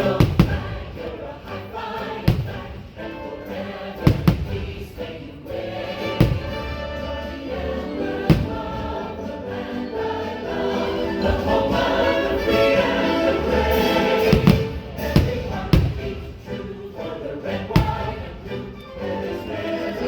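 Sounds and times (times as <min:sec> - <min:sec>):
patriotic choral music: 0:00.0 - 0:20.0
firework booms: 0:00.2 - 0:01.0, 0:02.3 - 0:03.0, 0:04.0 - 0:05.0, 0:06.1 - 0:06.8, 0:08.2 - 0:09.0, 0:14.2 - 0:16.4, 0:17.8 - 0:18.3.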